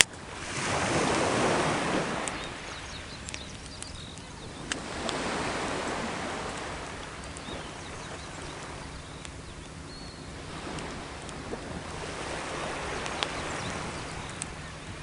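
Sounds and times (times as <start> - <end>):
campfire crackling: 0.0 - 15.0
small waves washing on shore: 0.0 - 15.0.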